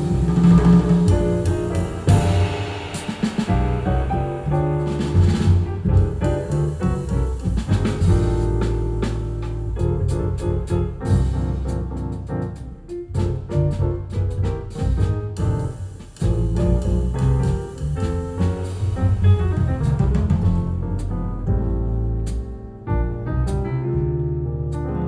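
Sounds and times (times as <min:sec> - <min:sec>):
strong bass notes: 0:00.0 - 0:11.8
drum hits: 0:00.0 - 0:23.2
jazz through loudspeakers: 0:00.0 - 0:23.7
piano: 0:00.0 - 0:25.0.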